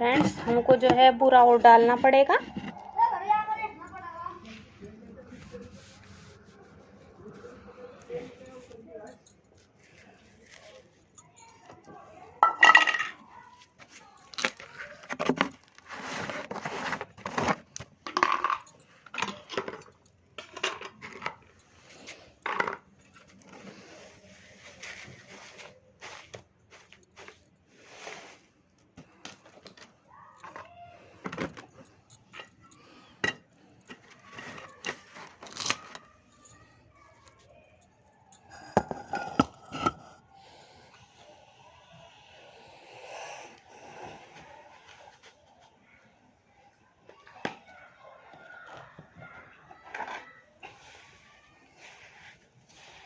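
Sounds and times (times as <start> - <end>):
utensils clinking against a bowl: 7.4 - 27.4, 29.4 - 41.3.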